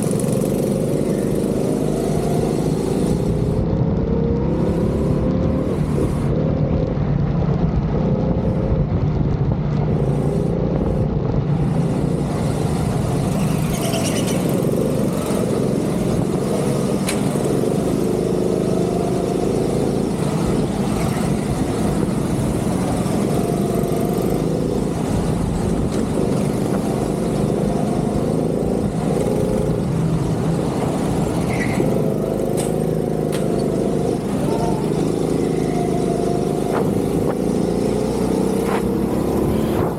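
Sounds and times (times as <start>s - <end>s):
go-kart engine revving: 0.0s - 6.4s, 9.9s - 39.9s
wind noise on microphone: 0.0s - 39.9s.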